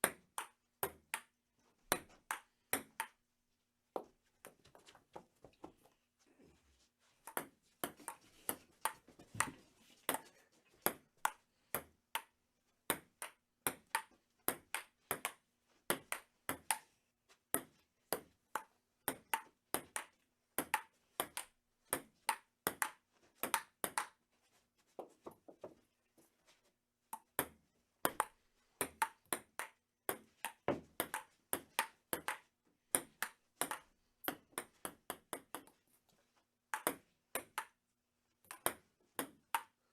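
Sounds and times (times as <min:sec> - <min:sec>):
ping-pong ball hitting paddles and table: 0:00.0 - 0:03.2, 0:07.3 - 0:10.3, 0:10.9 - 0:16.9, 0:17.5 - 0:24.2, 0:27.1 - 0:35.8, 0:36.7 - 0:37.8, 0:38.4 - 0:39.8.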